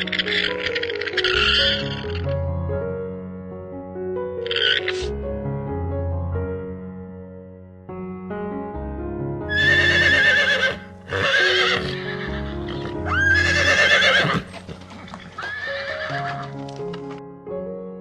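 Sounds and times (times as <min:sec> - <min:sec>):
horse neighing: 0:00.0 - 0:02.3, 0:04.5 - 0:05.1, 0:09.5 - 0:16.6
calm piano music: 0:00.0 - 0:18.0.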